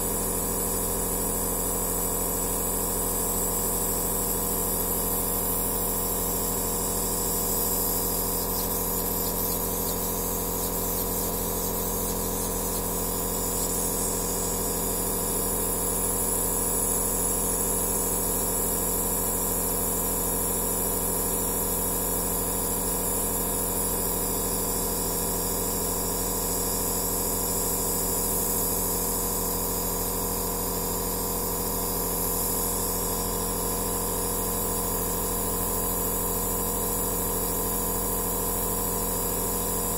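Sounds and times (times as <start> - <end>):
nebulizer motor hum: 0.0 - 19.2.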